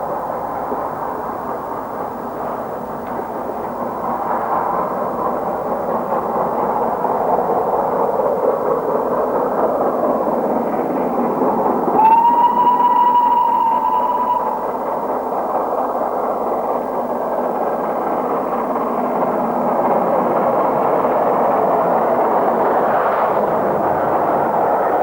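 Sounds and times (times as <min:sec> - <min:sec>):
steam locomotive rushing: 0:00.0 - 0:25.0
steam locomotive whistle: 0:11.9 - 0:15.4.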